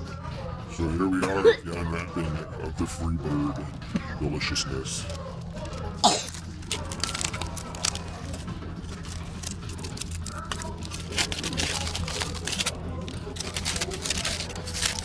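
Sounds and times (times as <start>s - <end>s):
aluminium foil crinkling: 5.0s - 15.0s.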